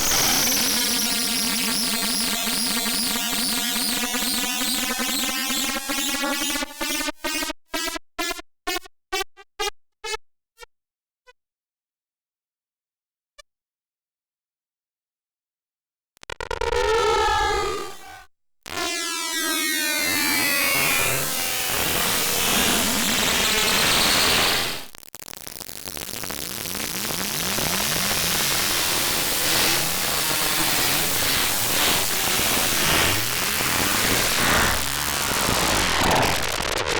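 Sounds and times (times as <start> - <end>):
warbling synthesized tones: 0.0 - 1.6, 32.0 - 36.9
harsh synthesized static hiss: 0.0 - 1.7, 19.9 - 36.9
stuttering electronic pulses: 0.0 - 3.9, 16.2 - 36.9.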